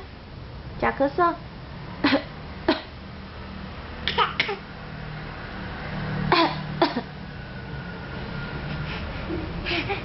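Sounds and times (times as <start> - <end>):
child fake coughing: 2.0 - 2.9, 4.1 - 4.7, 6.3 - 7.1.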